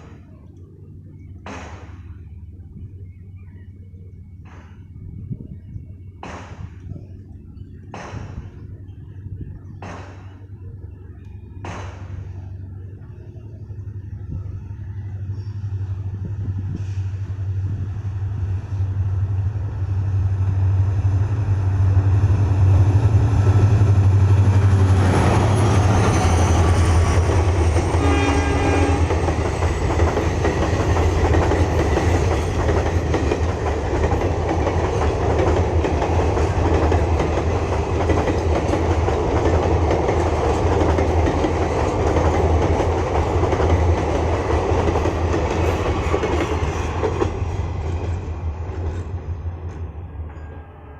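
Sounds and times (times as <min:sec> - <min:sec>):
diesel locomotive engine hum: 0:00.0 - 0:50.9
train wheels rumbling and clattering: 0:00.0 - 0:50.9
train horn blast: 0:26.8 - 0:29.8.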